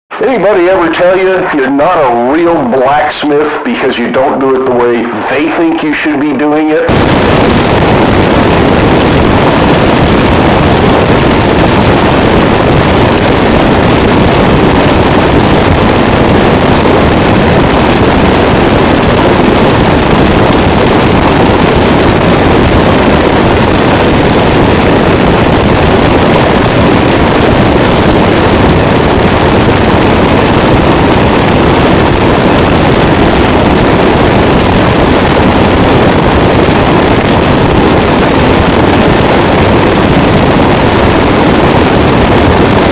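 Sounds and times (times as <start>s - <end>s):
distorted static noise wall: 0.1s - 42.9s.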